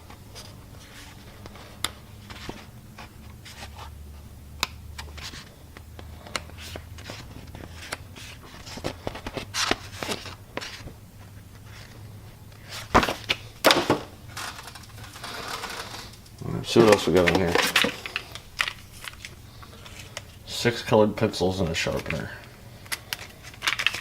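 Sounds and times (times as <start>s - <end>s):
paper rustling: 0.3s - 3.9s, 6.2s - 11.0s, 12.6s - 20.4s, 22.8s - 24.0s.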